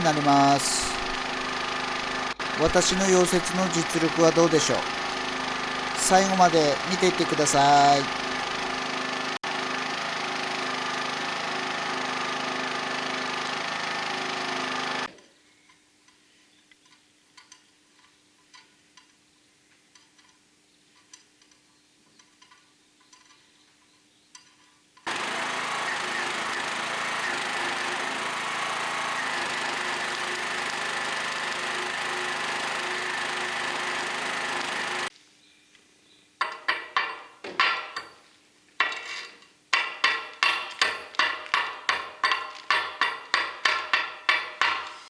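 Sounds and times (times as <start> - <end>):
steady machine noise: 0.0 - 15.1, 25.1 - 35.1.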